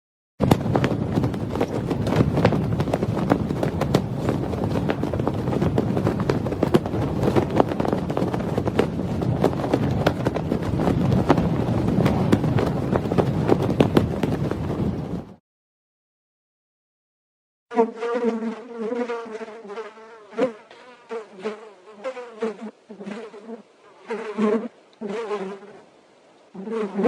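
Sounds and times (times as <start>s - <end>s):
sharp knocks and crackles: 0.4s - 15.3s
steady low rumble: 0.4s - 15.4s.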